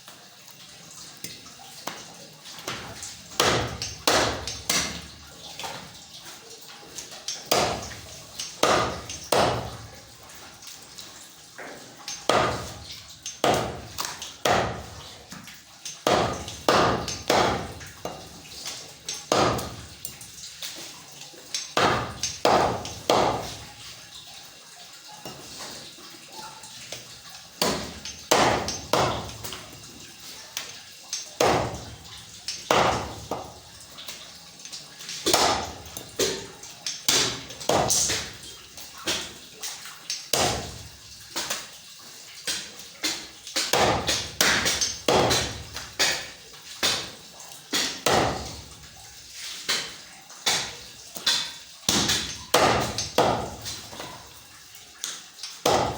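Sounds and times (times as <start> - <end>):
blade chopping meat on block: 16.1 - 17.7.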